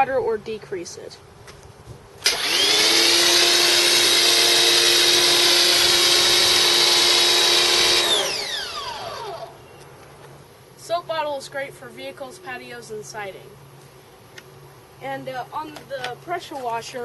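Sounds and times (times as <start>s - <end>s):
pressure washer motor whining: 2.2s - 9.7s.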